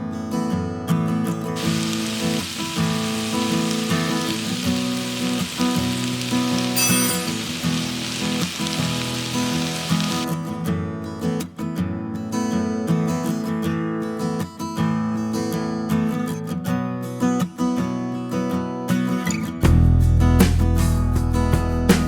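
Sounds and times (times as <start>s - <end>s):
acoustic guitar music: 0.0s - 22.0s
food sizzling in a pan: 1.5s - 10.3s.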